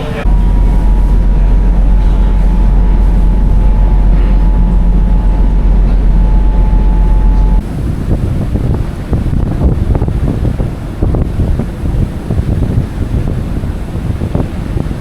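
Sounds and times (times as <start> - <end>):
faint steady whine: 0.0 - 7.6
vehicle rumbling in motion: 0.0 - 12.8
wind on microphone: 0.0 - 15.0.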